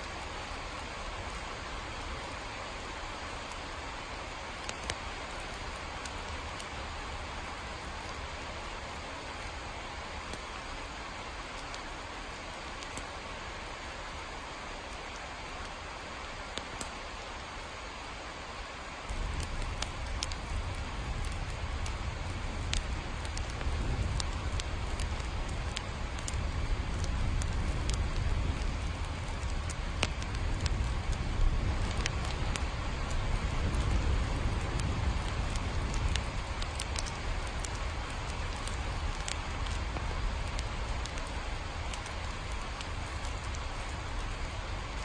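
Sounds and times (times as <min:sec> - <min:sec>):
steady rain: 0:00.0 - 0:45.0
drip ticks: 0:19.2 - 0:22.0, 0:22.6 - 0:30.9, 0:34.8 - 0:37.8, 0:38.6 - 0:41.3.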